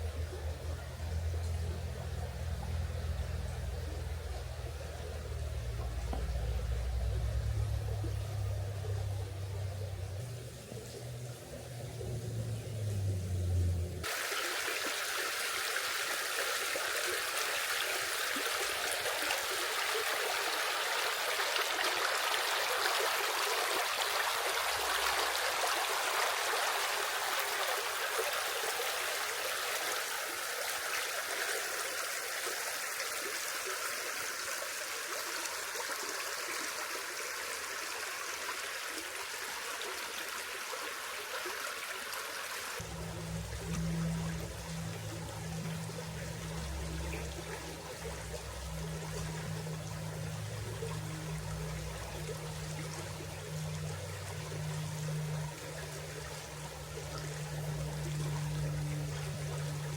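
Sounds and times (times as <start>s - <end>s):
low rumble: 0.0s - 14.0s, 42.8s - 59.9s
river water rushing: 13.4s - 59.9s.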